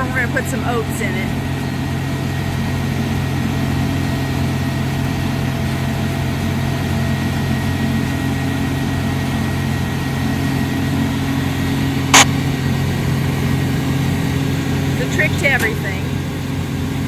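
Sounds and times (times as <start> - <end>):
tractor engine running: 7.3 - 17.0.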